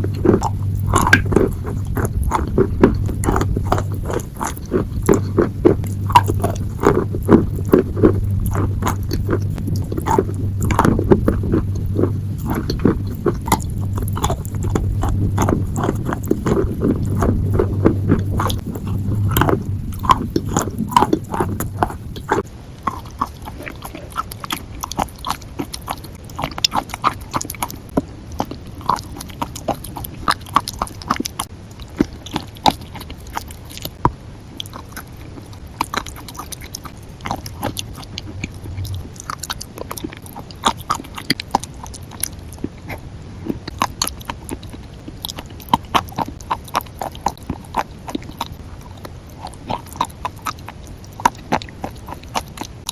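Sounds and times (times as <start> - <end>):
chewing crunchy food: 0.0 - 52.9.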